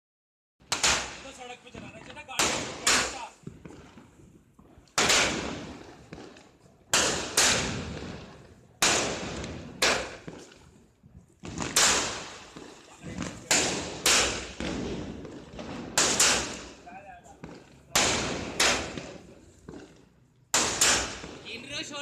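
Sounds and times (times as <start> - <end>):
fireworks loud bangs: 0.7 - 4.1, 5.0 - 10.4, 11.4 - 19.9, 20.5 - 21.7.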